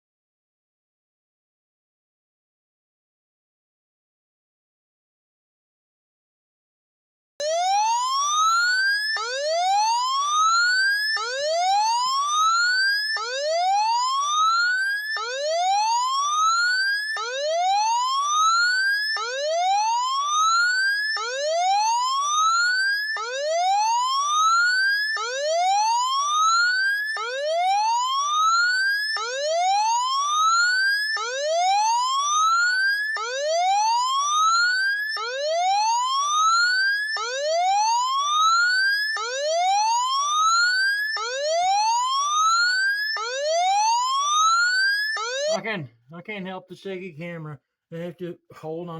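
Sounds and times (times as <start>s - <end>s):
whooping warning siren: 7.4s - 45.6s.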